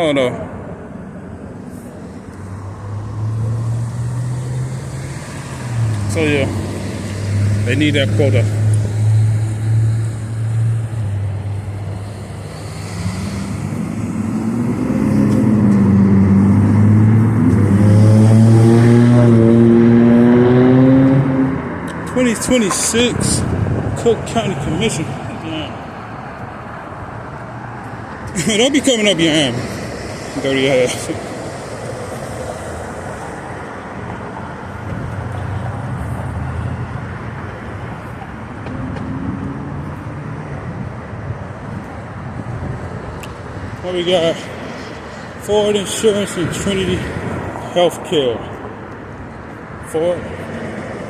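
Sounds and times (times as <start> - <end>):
road traffic passing: 0.0 - 51.0
vehicle engine humming: 0.1 - 51.0
vehicle accelerating past: 2.6 - 21.9.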